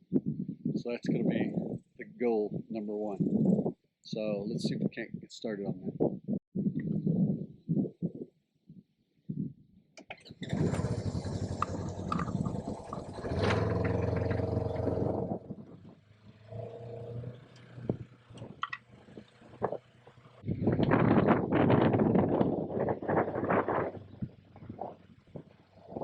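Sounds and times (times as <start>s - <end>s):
vehicle engine starting and running: 10.0s - 26.0s.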